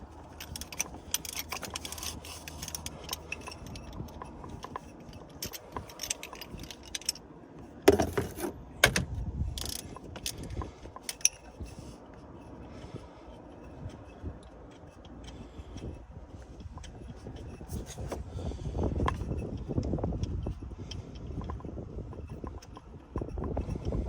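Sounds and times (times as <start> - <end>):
socket wrench turning bolts: 0.1 - 7.2, 7.9 - 11.5
metal hand tools clinking: 0.2 - 7.2.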